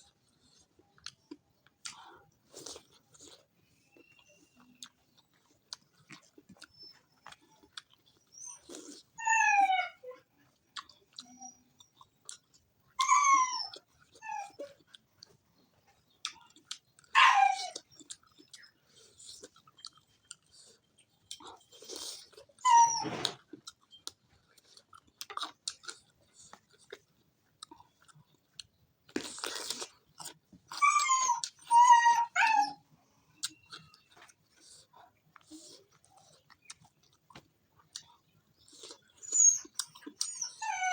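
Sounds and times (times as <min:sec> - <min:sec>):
animal whining cries: 0:08.3 - 0:10.3, 0:13.0 - 0:14.7, 0:17.1 - 0:17.9, 0:22.6 - 0:23.4, 0:30.8 - 0:32.8, 0:39.2 - 0:40.9.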